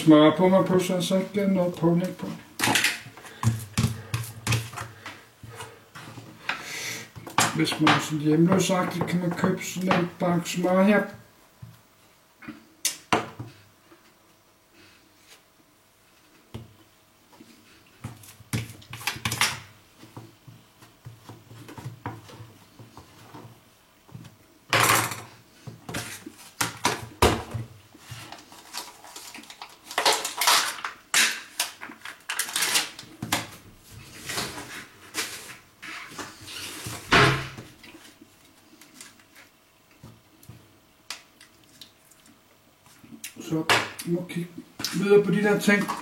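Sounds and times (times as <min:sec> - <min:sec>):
rustling and scraping: 0:01.4 - 0:06.6, 0:25.1 - 0:27.2, 0:27.9 - 0:30.8, 0:31.4 - 0:40.2.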